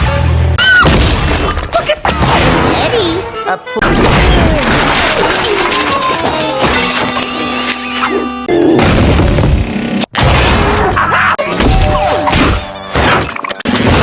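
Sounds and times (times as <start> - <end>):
music: 0.0 - 1.0, 1.8 - 4.8, 5.5 - 9.5.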